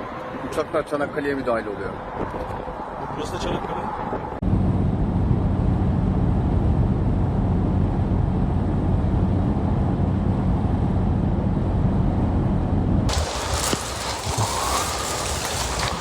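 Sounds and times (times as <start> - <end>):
vehicle engine droning: 13.1 - 16.0.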